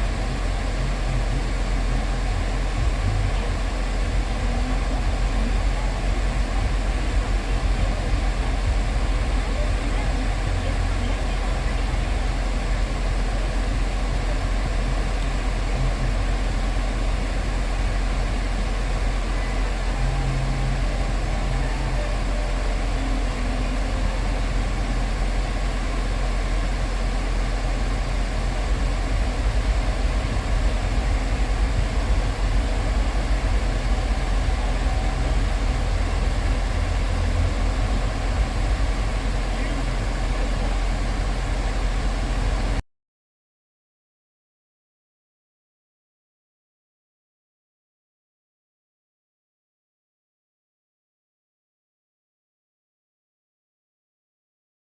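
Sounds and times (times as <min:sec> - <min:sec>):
car air conditioning droning: 0:00.0 - 0:42.8.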